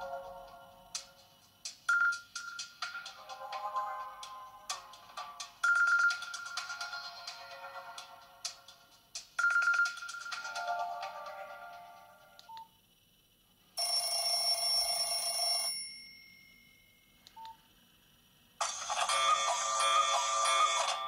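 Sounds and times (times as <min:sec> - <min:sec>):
phone ringtones: 0:18.6 - 0:21.0.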